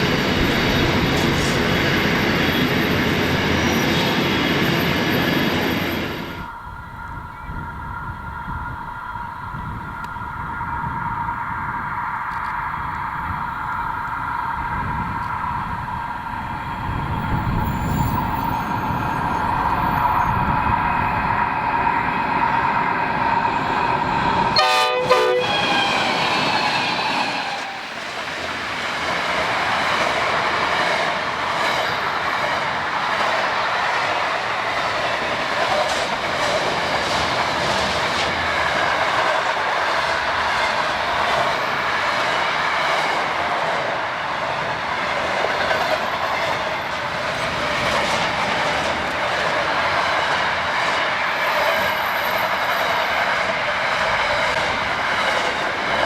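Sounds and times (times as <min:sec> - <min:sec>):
train wagons rolling: 0:15.0 - 0:21.2, 0:23.4 - 0:56.0
train horn: 0:24.5 - 0:27.8.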